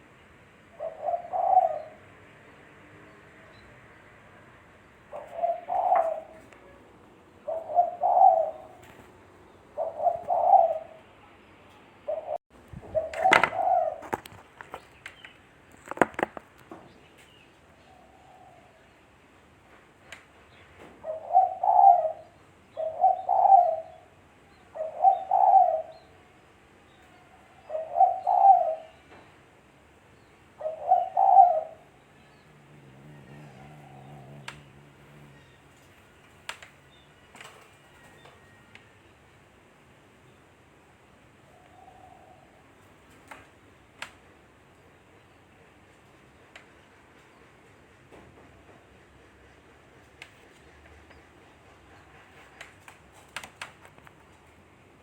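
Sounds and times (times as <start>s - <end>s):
dove cooing: 0.7s - 2.1s, 5.1s - 6.5s, 7.4s - 9.1s, 9.7s - 11.0s, 12.1s - 14.7s, 21.0s - 24.2s, 24.8s - 26.0s, 27.7s - 28.9s, 30.6s - 36.2s.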